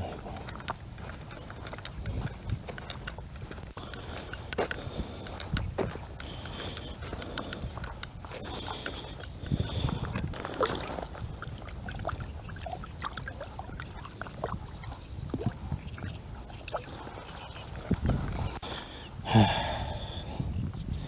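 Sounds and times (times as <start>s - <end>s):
water splashing: 6.2s - 18.6s.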